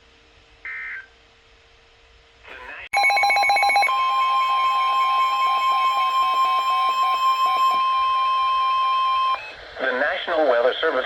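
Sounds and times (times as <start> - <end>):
steady alarm tone: 3.0 - 9.6.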